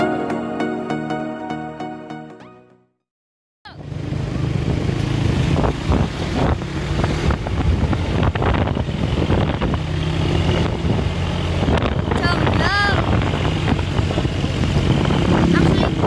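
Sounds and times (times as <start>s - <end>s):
bus engine drone: 3.7s - 16.0s
road noise: 3.7s - 16.0s.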